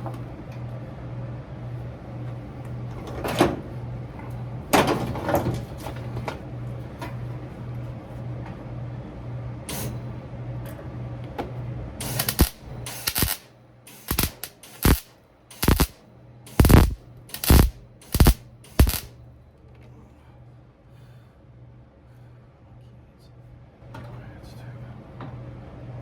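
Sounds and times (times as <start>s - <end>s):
pulsing low hum: 12.0s - 19.1s.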